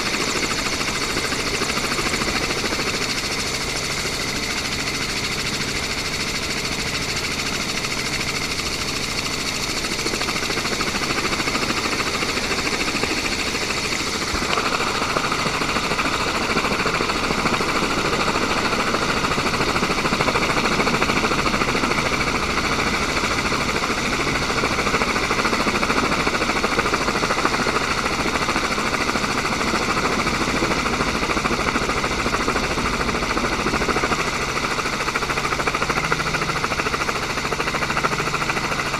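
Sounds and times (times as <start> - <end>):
steady mechanical whine: 0.0 - 38.9
rough engine noise: 10.4 - 25.2.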